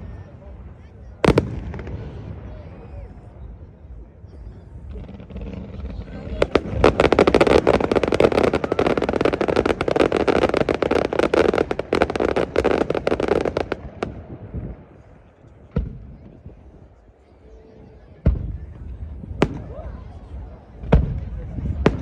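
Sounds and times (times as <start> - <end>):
fireworks crackling: 0.0 - 16.6.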